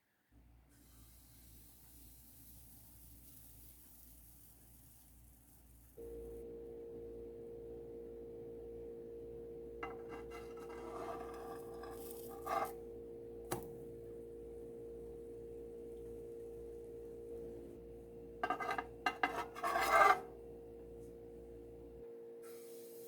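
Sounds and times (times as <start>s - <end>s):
steady ringing tone: 6.0s - 22.0s
kitchen utensils clinking: 18.4s - 20.3s.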